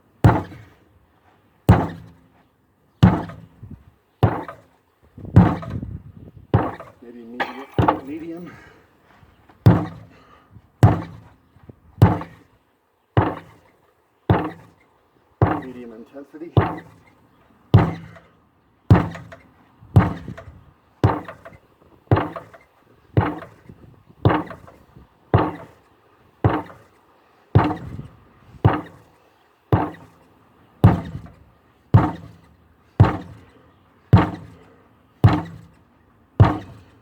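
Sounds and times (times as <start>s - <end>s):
sledgehammer striking a tire: 0.2s - 0.7s, 1.7s - 2.3s, 3.0s - 4.6s, 5.3s - 5.9s, 6.5s - 8.4s, 9.7s - 10.2s, 10.8s - 11.3s, 12.0s - 12.4s, 13.2s - 13.6s, 14.3s - 14.8s, 15.4s - 15.8s, 16.6s - 17.0s, 17.7s - 18.3s, 18.9s - 19.4s, 20.0s - 22.6s, 23.2s - 25.8s, 26.4s - 26.9s, 27.6s - 29.0s, 29.7s - 30.2s, 30.8s - 33.5s, 34.1s - 35.8s, 36.4s - 37.0s.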